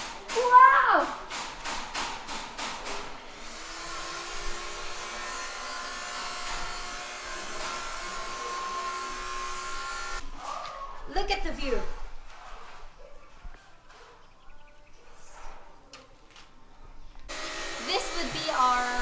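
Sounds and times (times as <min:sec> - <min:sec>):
sharp knocks: 0:00.0 - 0:03.2
small electric motor whining: 0:03.2 - 0:10.2, 0:17.3 - 0:19.0.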